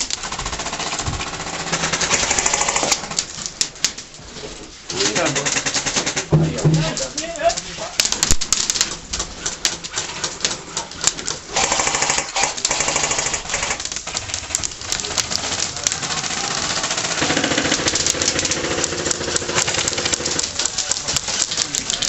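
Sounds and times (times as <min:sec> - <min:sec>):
airsoft rifles firing full auto: 0:00.0 - 0:03.4, 0:05.0 - 0:06.3, 0:09.9 - 0:22.0.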